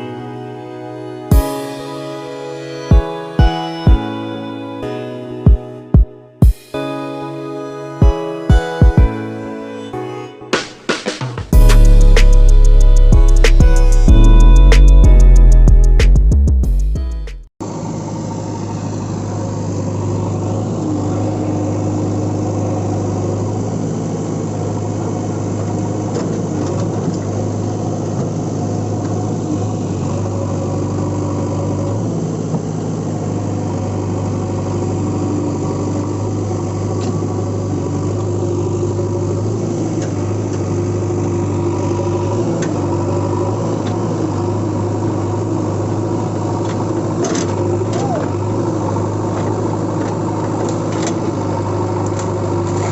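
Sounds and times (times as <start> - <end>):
vehicle engine running steadily: 11.6 - 52.9.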